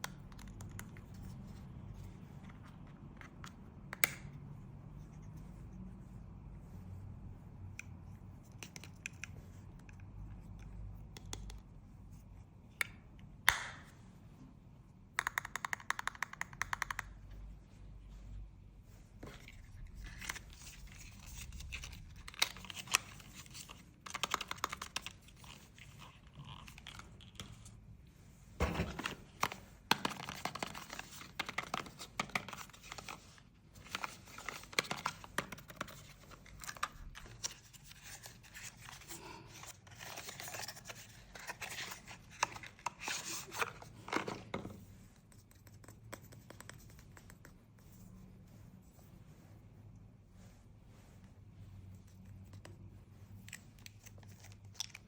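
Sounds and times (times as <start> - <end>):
sharp clicks and taps: 15.1 - 17.2.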